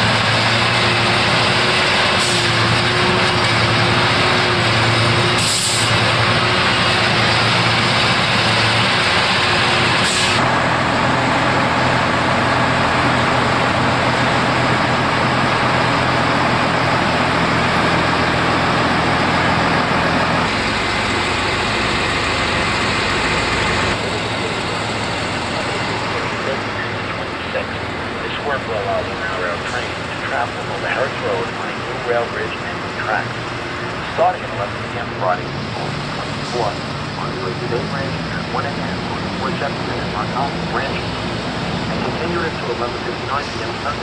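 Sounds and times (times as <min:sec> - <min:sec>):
heavy machinery running: 0:00.0 - 0:44.0
hissing air releases: 0:05.4 - 0:06.0.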